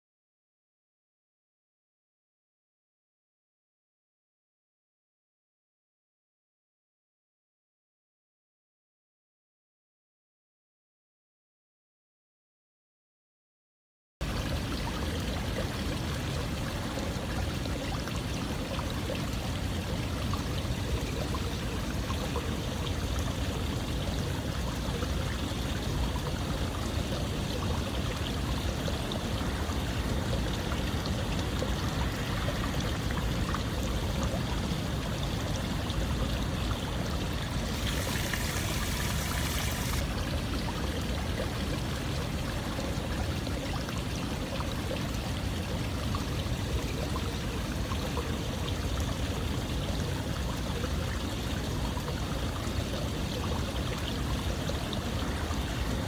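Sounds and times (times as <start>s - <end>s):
stream rushing and trickling: 14.2s - 56.0s.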